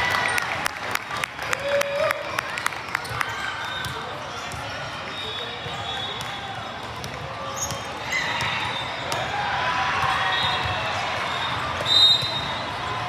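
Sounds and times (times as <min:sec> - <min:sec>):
murmur of spectators: 0:00.0 - 0:13.0.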